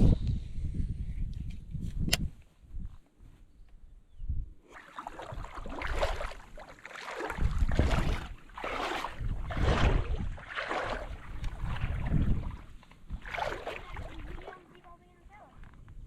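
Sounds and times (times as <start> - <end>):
wind rumbling on microphone: 0.0 - 16.0
river water sloshing and splashing: 4.6 - 14.8.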